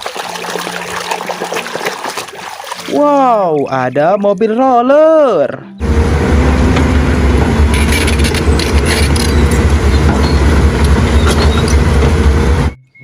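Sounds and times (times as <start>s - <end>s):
heavy engine running: 5.8s - 12.8s.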